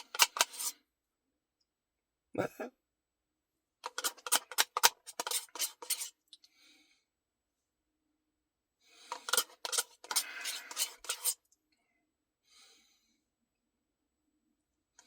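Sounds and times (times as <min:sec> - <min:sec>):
eating clicks and scrapes: 0:00.0 - 0:00.8, 0:03.8 - 0:06.5, 0:09.1 - 0:11.5.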